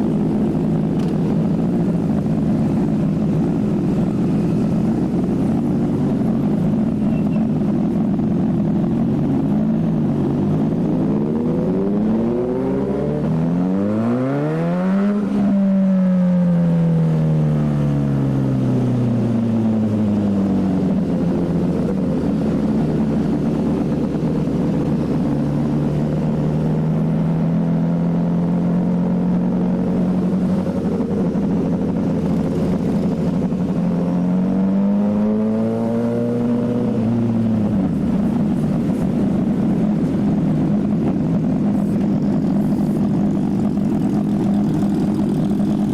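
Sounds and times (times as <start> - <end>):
steady rushing noise: 0.0 - 15.7, 18.5 - 45.9
motorcycle engine revving: 0.0 - 45.9.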